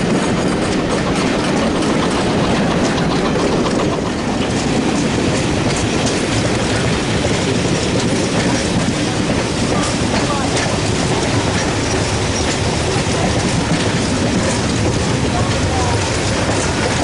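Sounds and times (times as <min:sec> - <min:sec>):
clickety-clack of rails: 0:00.0 - 0:17.0
train wheels rumbling on rails: 0:00.0 - 0:17.0.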